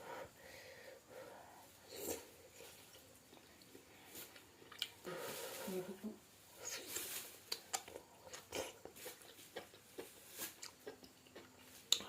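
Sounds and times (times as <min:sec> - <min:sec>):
person chewing: 0:01.9 - 0:05.1, 0:07.5 - 0:12.0.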